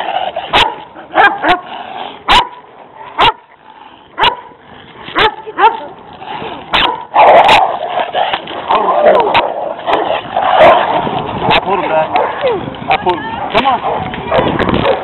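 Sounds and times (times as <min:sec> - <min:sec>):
dog barking: 0:00.5 - 0:01.6, 0:02.3 - 0:02.6, 0:03.2 - 0:03.4, 0:04.2 - 0:04.5, 0:05.2 - 0:05.8, 0:06.7 - 0:07.8, 0:12.1 - 0:12.5, 0:13.4 - 0:15.0.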